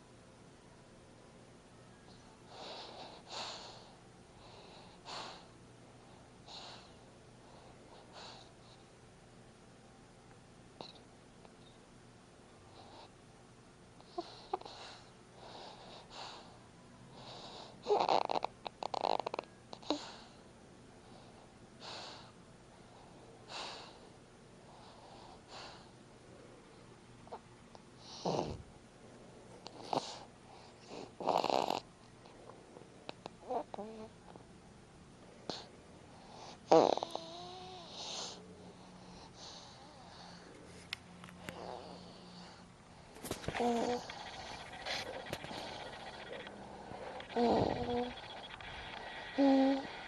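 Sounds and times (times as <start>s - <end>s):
baby snoring faintly: 2.5s - 5.6s, 14.0s - 20.4s, 28.0s - 28.6s, 29.6s - 32.4s, 33.2s - 34.2s, 35.5s - 40.5s, 41.4s - 50.0s.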